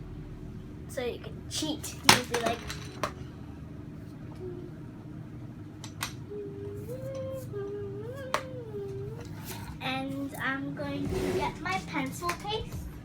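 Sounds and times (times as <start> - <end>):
low room hum: 0.0 - 13.0
child humming: 4.3 - 5.1, 6.1 - 10.3.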